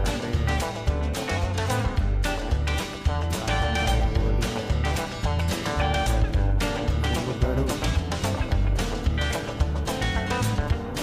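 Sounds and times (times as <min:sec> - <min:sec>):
upbeat instrumental music: 0:00.0 - 0:11.0.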